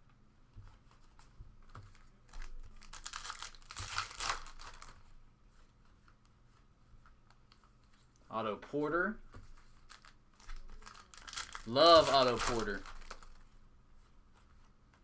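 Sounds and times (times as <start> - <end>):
wrapper crinkling and tearing: 1.9 - 5.0, 9.8 - 13.4.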